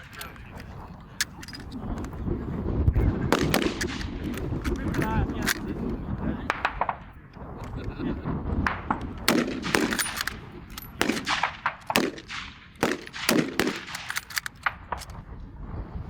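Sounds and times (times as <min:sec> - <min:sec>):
wind buffeting microphone: 0:00.0 - 0:16.0
rifle shots: 0:03.3 - 0:05.6, 0:08.7 - 0:15.2.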